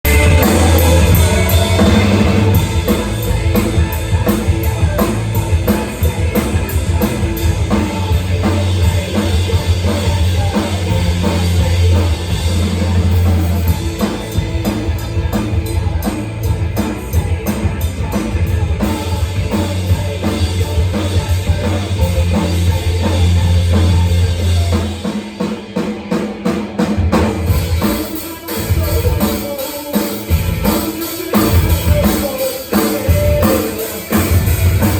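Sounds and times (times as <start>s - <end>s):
low bass line: 0.0s - 24.8s
rock drum kit beat: 0.0s - 34.9s.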